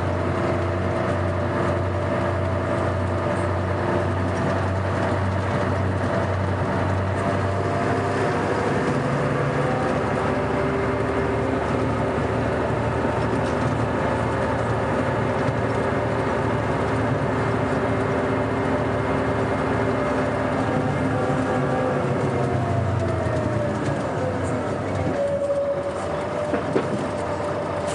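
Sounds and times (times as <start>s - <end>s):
diesel coach engine droning: 0.0s - 27.9s.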